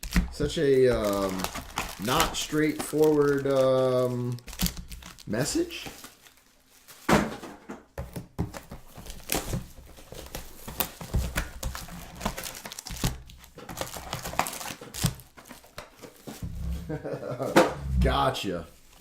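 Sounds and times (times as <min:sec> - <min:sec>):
wrappers crinkling and tearing: 0:00.0 - 0:07.1, 0:08.6 - 0:16.6.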